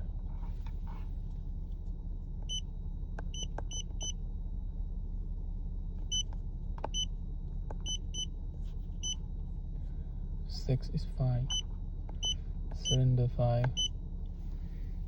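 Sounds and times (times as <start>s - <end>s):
car engine idling: 0.0s - 15.0s
short electronic beeps: 12.2s - 13.0s, 13.7s - 13.9s.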